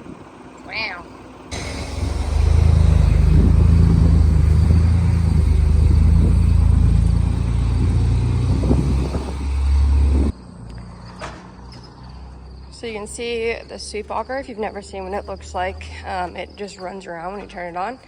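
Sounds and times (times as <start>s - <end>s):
machine motor humming: 1.5s - 10.3s.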